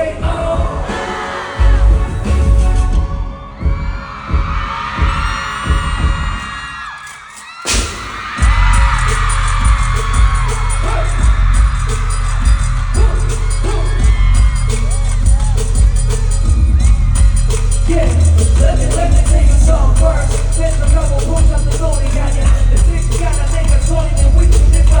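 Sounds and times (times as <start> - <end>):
heavy bass beat: 0.0 - 6.7, 7.8 - 25.0
concert crowd screaming: 0.0 - 25.0
booming bass drum hits: 7.7 - 20.3.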